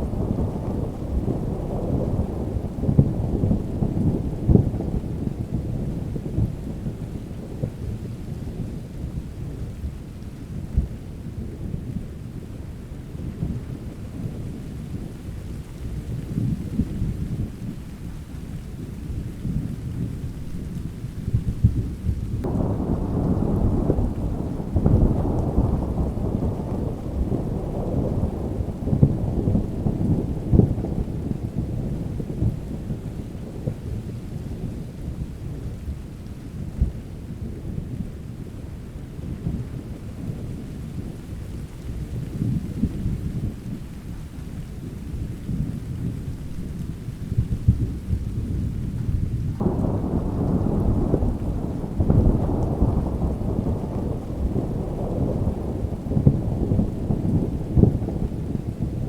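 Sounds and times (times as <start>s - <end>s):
rolling thunder: 0.0s - 59.0s
steady rain: 0.0s - 59.0s.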